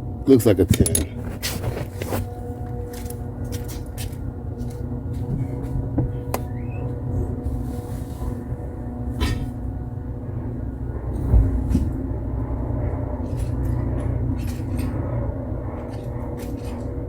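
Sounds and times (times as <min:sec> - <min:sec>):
steady low hum: 0:00.0 - 0:17.0
heavy low thump: 0:11.2 - 0:12.3.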